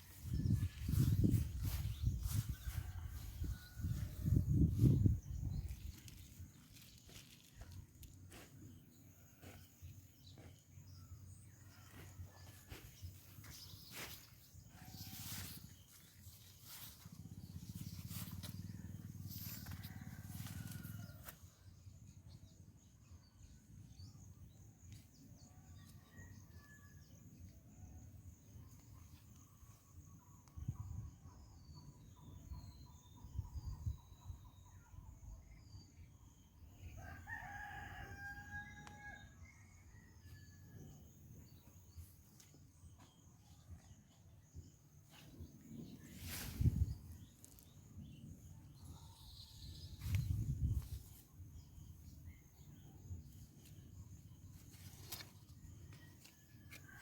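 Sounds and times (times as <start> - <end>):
rooster crowing: 37.0 - 40.2.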